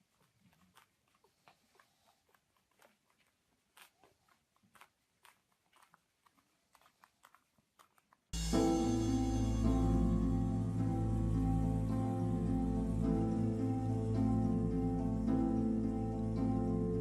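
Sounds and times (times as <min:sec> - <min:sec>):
faint chewing: 0:00.0 - 0:08.4.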